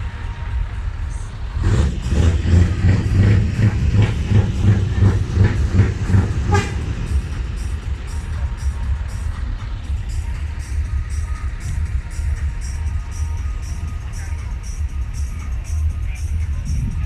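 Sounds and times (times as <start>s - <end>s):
heavy truck rumbling: 0.0s - 17.0s
loud music with bass beat: 0.0s - 17.0s.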